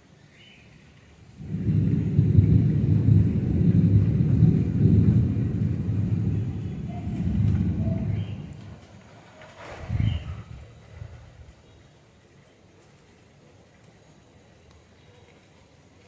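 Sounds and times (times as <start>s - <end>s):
thunder rumbling: 1.3s - 11.6s.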